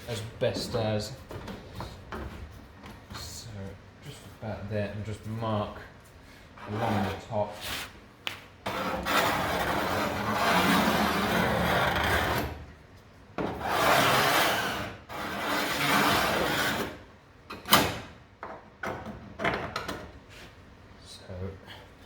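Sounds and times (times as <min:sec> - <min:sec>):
scribe scraping along steel: 0:06.6 - 0:08.0, 0:08.6 - 0:12.6, 0:13.6 - 0:17.0.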